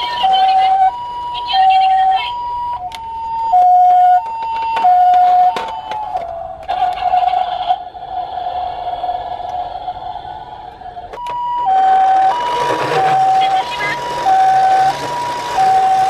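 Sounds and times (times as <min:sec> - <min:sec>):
toy siren: 0:00.0 - 0:07.9, 0:11.2 - 0:16.0.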